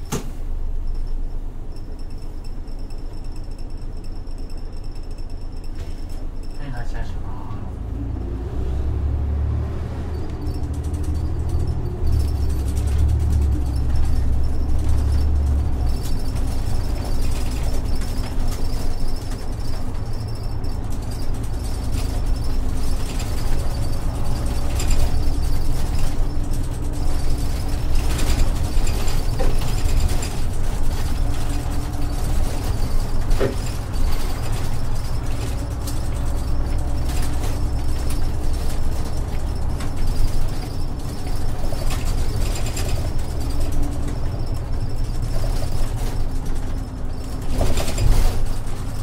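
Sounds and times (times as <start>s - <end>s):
bus diesel engine droning: 0.0s - 49.0s
interior fittings rattling: 10.4s - 49.0s.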